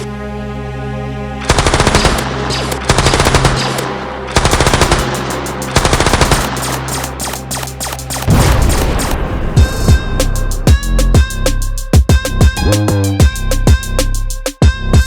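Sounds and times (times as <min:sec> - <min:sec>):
droning music: 0:00.0 - 0:15.0
machine-gun fire: 0:01.5 - 0:09.8.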